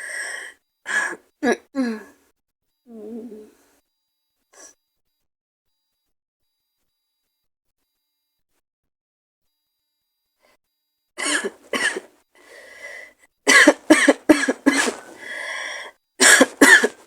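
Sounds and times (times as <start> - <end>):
wheezy breath in: 0.0 - 1.2, 11.4 - 17.0
woman coughing: 0.9 - 2.1, 11.2 - 12.6, 13.5 - 17.0.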